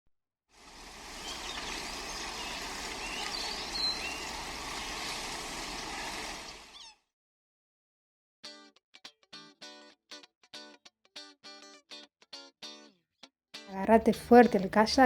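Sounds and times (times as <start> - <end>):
outdoor rushing noise: 0.7 - 6.7.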